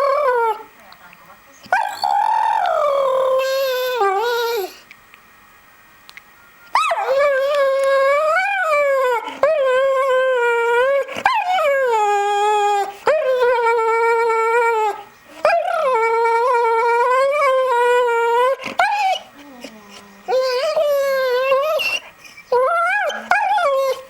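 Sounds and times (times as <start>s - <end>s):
dog howling: 1.7s - 4.8s, 6.7s - 24.0s.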